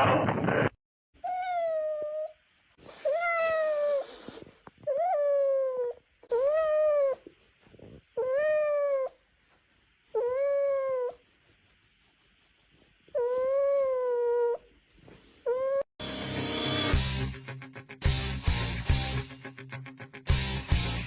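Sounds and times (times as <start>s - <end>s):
cat meowing: 1.2s - 2.3s.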